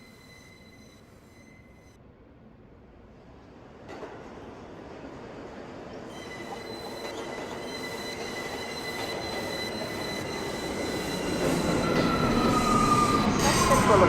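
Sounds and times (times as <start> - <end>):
subway train running on rails: 0.0 - 14.0
wheels squealing: 6.2 - 14.0.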